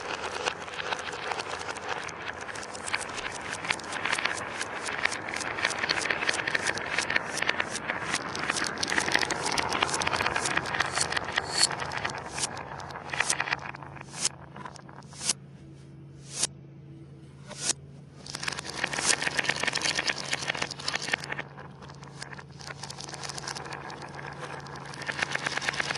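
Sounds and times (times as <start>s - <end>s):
marbles clattering on a track: 0.0s - 15.4s, 17.5s - 25.9s.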